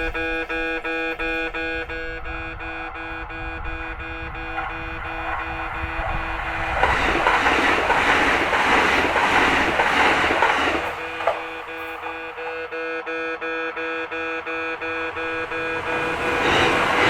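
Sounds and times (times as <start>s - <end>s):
electric train passing: 0.0s - 17.0s.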